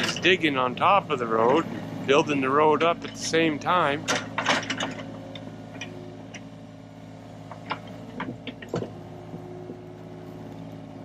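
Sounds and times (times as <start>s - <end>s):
excavator diesel engine running: 0.0s - 11.0s
machine clicks and knocks: 7.5s - 9.0s.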